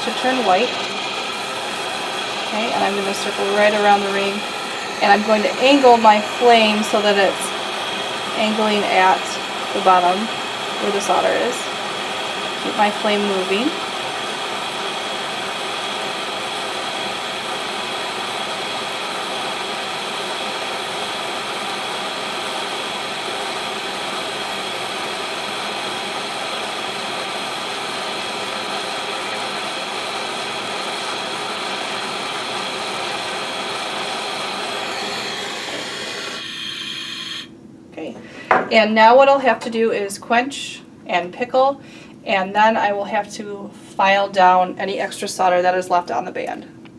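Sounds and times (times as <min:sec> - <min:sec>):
torch flame hissing: 0:00.0 - 0:37.5.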